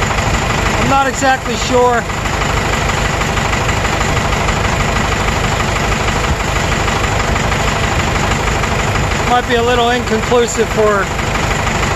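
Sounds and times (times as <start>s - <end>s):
diesel engine running loud: 0.0s - 11.9s.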